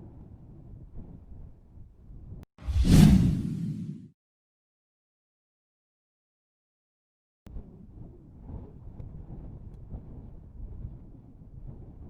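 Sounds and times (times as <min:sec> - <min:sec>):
gusting wind rumble: 0:07.6 - 0:12.0.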